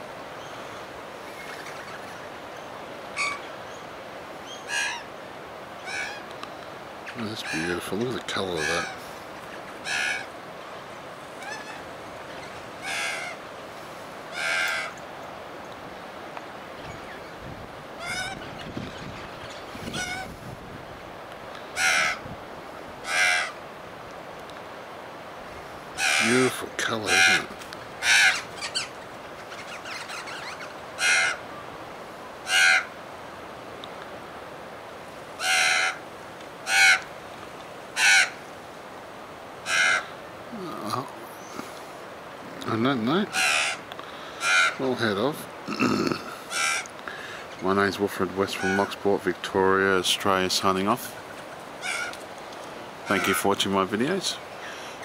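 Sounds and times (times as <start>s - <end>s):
bird calling: 0.3s - 13.5s, 14.3s - 15.8s, 16.6s - 20.4s, 21.5s - 22.3s, 22.9s - 23.6s, 25.4s - 33.0s, 35.3s - 38.6s, 39.6s - 41.9s, 42.5s - 49.1s, 50.8s - 55.0s.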